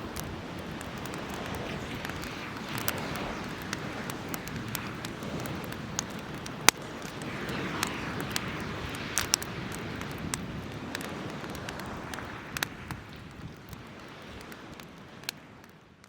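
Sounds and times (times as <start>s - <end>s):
hiss of flames: 0.0s - 16.0s
wood fire crackling and popping: 0.0s - 16.0s.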